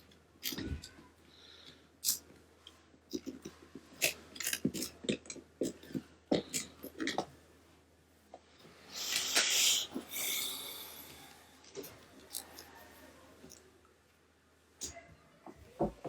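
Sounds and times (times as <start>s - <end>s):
hissing scrape: 8.9s - 11.1s.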